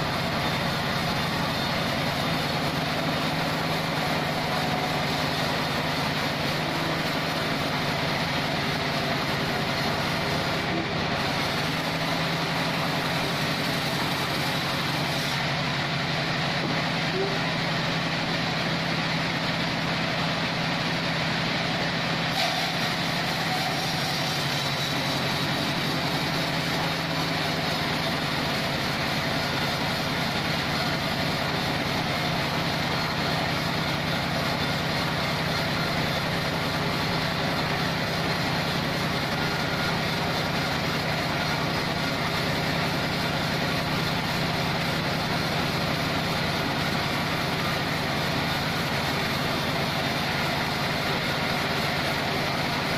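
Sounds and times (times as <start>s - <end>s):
sawmill engine running: 0.0s - 52.9s
hiss: 22.3s - 34.7s.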